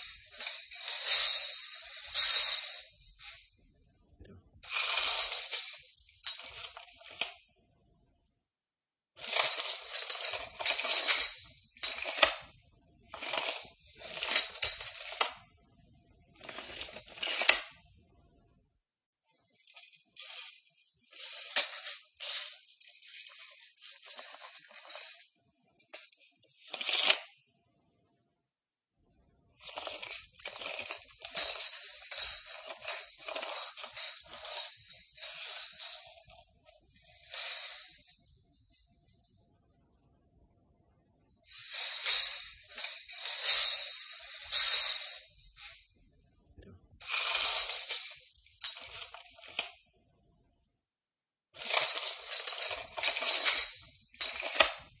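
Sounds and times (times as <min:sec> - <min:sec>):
tape measure blade rattling: 0:00.0 - 0:03.4, 0:04.6 - 0:07.4, 0:09.2 - 0:12.5, 0:19.7 - 0:25.2, 0:29.6 - 0:36.4, 0:37.0 - 0:38.1, 0:41.5 - 0:45.8, 0:47.0 - 0:49.8, 0:51.6 - 0:55.0.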